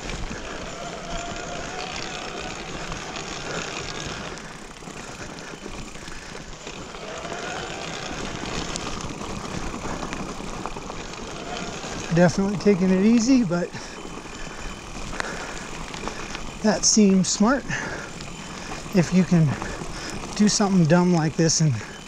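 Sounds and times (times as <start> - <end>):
bike tyres and rattle on dirt: 0.0 - 22.0
faint squeal: 0.5 - 3.7.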